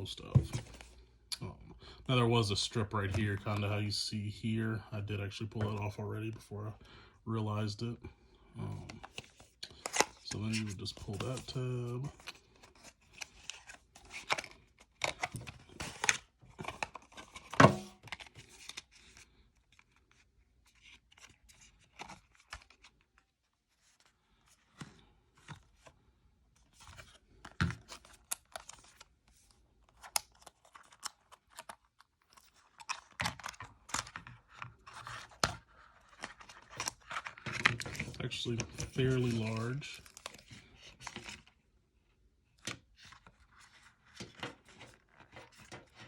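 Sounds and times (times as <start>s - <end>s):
packaging crackling and scraping: 29.9s - 41.5s.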